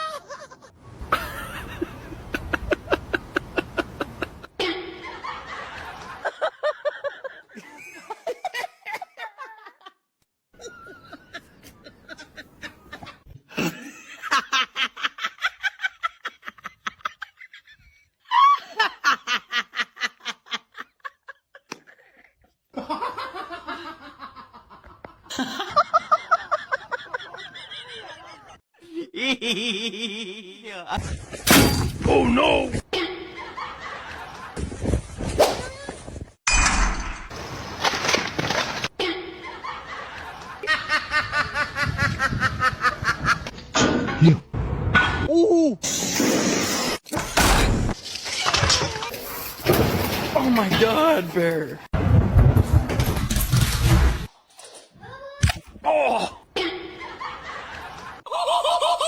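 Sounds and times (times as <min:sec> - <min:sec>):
person laughing: 0:00.0 - 0:05.0, 0:28.8 - 0:31.0.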